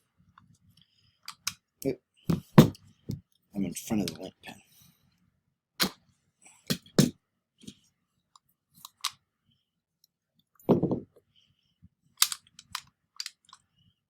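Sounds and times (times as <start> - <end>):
pistol parts metal clicks: 12.2 - 13.6.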